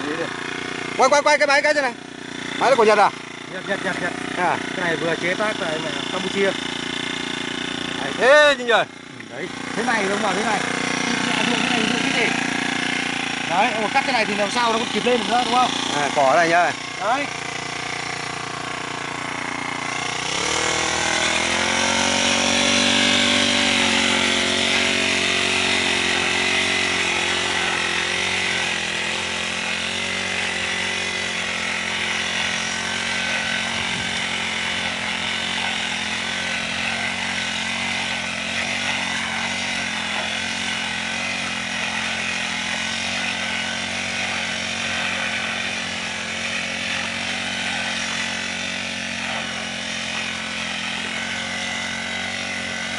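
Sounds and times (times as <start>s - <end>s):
brush cutter engine revving: 0.0s - 52.9s.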